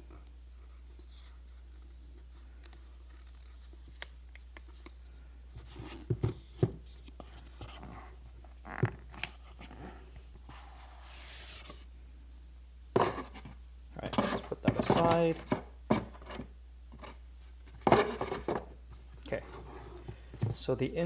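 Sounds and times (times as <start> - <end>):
cardboard box handled: 13.0 - 20.7
cardboard scraping: 13.0 - 20.7.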